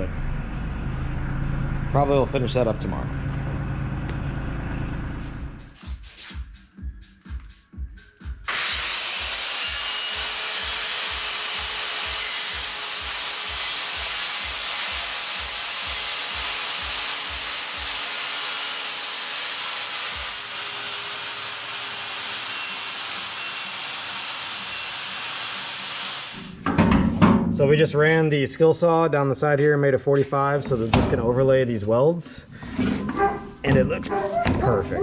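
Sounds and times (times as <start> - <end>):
circular saw cutting plastic: 8.5 - 26.6.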